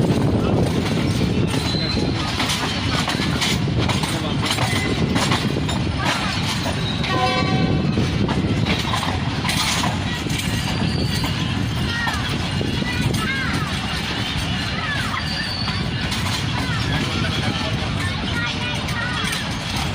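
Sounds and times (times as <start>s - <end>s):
train rumble and wheel clatter: 0.0s - 19.9s
train horn blast: 7.0s - 8.0s.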